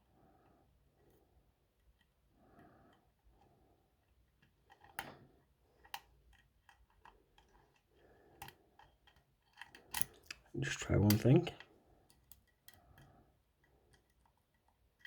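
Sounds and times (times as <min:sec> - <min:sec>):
lock pick clicking in lock: 0:08.4 - 0:11.3.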